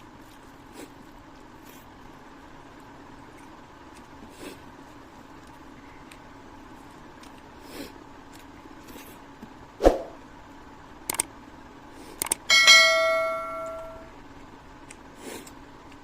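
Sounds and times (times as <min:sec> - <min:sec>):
light clicks: 0:11.1 - 0:11.3
metal tableware ringing: 0:12.5 - 0:14.1.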